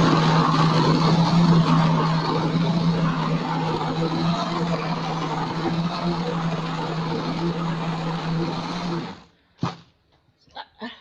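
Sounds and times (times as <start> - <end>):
blender motor running: 0.0 - 9.3.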